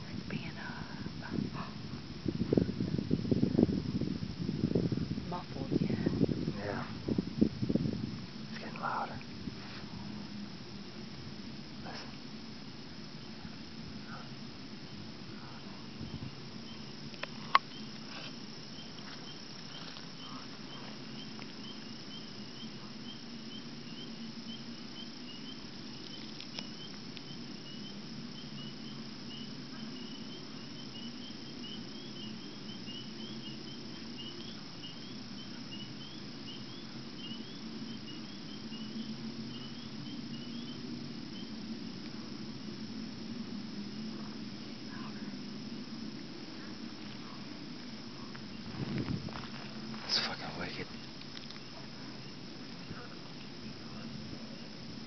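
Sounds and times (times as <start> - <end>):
hollow distant rumble: 0.0 - 26.1
insect chirping: 0.0 - 55.0.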